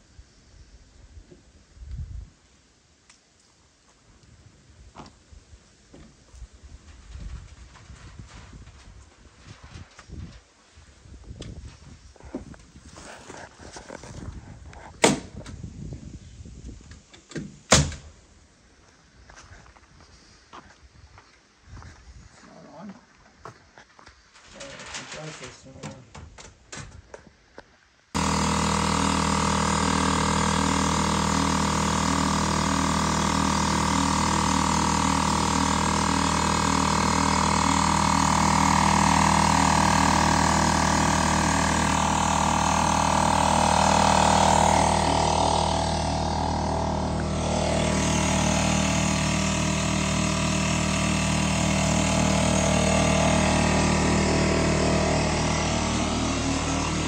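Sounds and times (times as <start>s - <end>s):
motor engine running: 28.2s - 57.0s.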